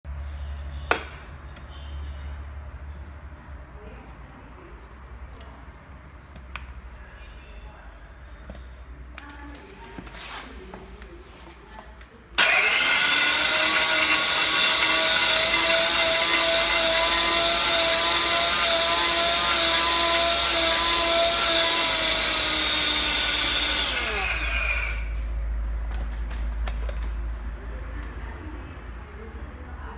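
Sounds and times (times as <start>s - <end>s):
powder grinder whining: 12.4s - 25.2s.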